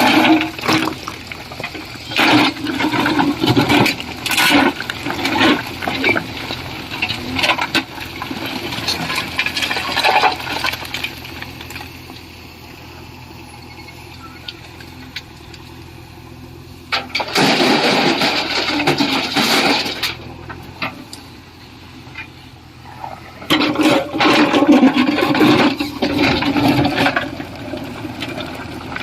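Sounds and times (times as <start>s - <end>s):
stone pouring into trailer: 0.0s - 11.9s, 16.9s - 21.0s, 23.0s - 29.0s
diesel engine running: 0.0s - 29.0s.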